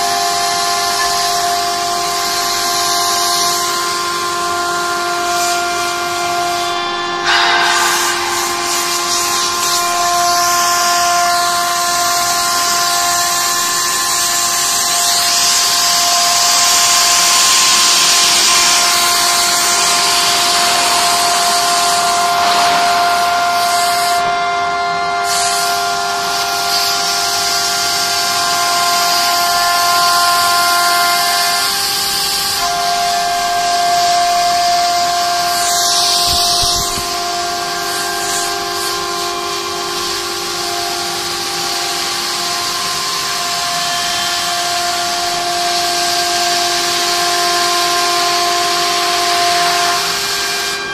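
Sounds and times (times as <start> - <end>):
router spindle whining: 0.0 - 50.9
high hiss: 5.4 - 13.2.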